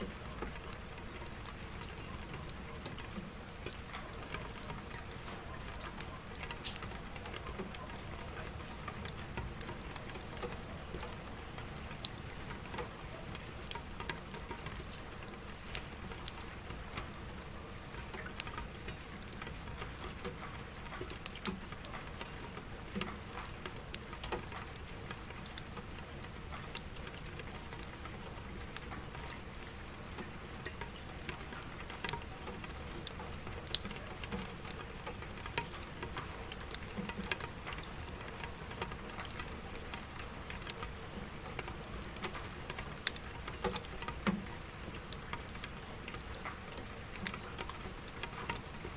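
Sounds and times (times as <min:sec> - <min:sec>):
rain drops tapping on a surface: 0:00.0 - 0:48.9.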